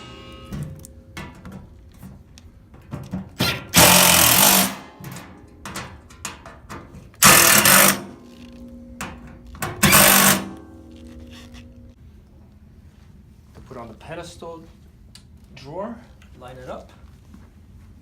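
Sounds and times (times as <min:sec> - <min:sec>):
power drill driving screws: 0:03.7 - 0:04.8, 0:07.2 - 0:08.1, 0:09.8 - 0:10.6.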